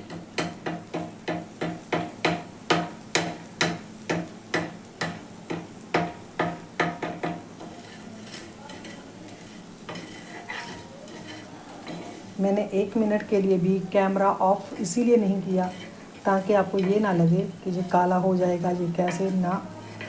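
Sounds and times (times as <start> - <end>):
spoon striking a pan: 0.0 - 12.2, 19.0 - 20.0
spoon scraping a pan: 7.0 - 13.3, 14.8 - 20.0.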